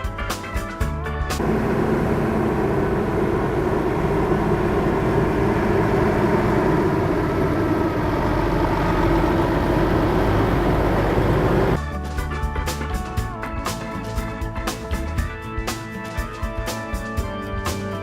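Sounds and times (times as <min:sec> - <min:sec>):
vehicle engine rumble: 0:01.4 - 0:11.8.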